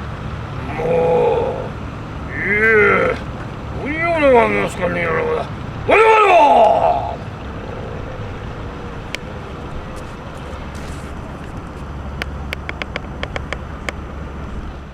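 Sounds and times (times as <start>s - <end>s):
low background rumble: 0.0s - 14.9s
sharp clicks: 11.2s - 14.0s.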